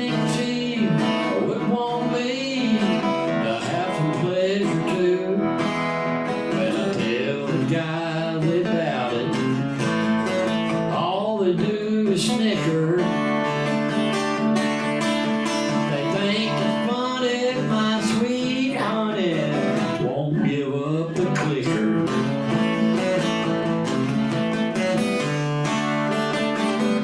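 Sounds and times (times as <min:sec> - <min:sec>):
acoustic guitar strumming: 0:00.0 - 0:27.0.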